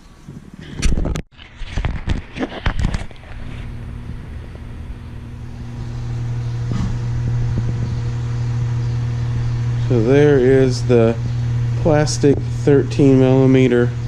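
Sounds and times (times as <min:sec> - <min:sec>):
vehicle engine hum: 0:03.0 - 0:14.0.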